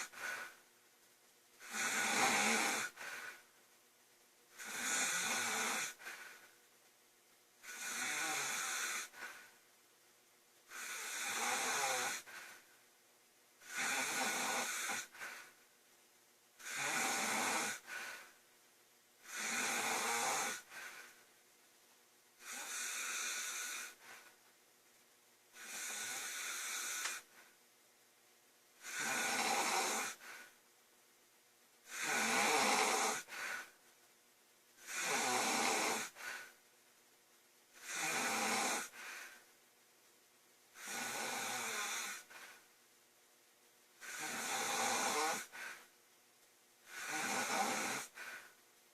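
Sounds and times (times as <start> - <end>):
girl snoring loudly: 0.0 - 0.6, 1.6 - 3.4, 4.5 - 6.4, 7.6 - 9.5, 10.7 - 12.6, 13.6 - 15.5, 16.6 - 18.4, 19.2 - 21.2, 22.4 - 24.3, 25.5 - 27.4, 28.8 - 30.5, 31.8 - 33.7, 34.8 - 36.5, 37.8 - 39.4, 40.7 - 42.6, 44.0 - 45.8, 46.8 - 48.5
quiet breathing: 0.0 - 3.8, 4.5 - 7.0, 7.6 - 24.6, 25.5 - 27.8, 28.7 - 30.8, 31.8 - 34.1, 34.7 - 36.7, 37.6 - 39.7, 40.6 - 42.8, 43.9 - 46.1, 46.8 - 48.8.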